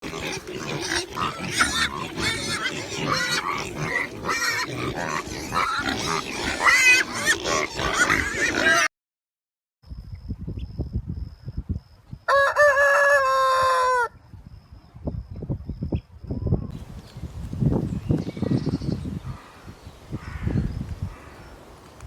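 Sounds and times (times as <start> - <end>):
pigs grunting and squealing: 0.0 - 8.9.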